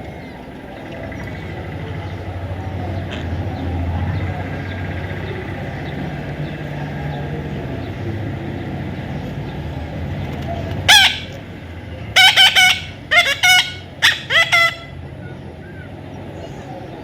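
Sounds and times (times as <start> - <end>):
parrot screeching: 10.9 - 11.3, 12.2 - 14.9.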